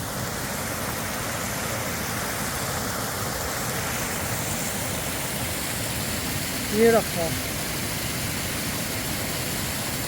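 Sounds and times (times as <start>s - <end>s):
creek water rushing: 0.0s - 10.0s.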